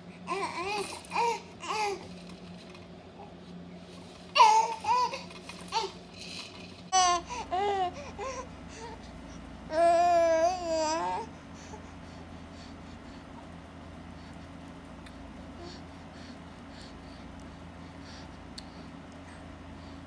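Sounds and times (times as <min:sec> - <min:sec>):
baby cooing and babbling: 0:00.3 - 0:02.1, 0:04.4 - 0:06.0, 0:07.0 - 0:13.5, 0:15.4 - 0:17.2.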